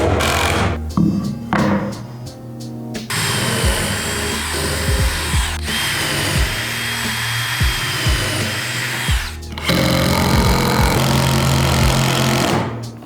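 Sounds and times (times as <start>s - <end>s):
background music: 0.0s - 13.0s
power tool high whine: 3.1s - 12.7s.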